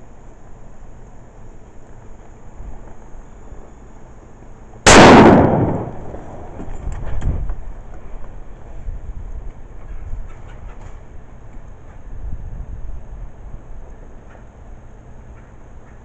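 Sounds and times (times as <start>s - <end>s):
rifle shot: 4.9s - 6.7s.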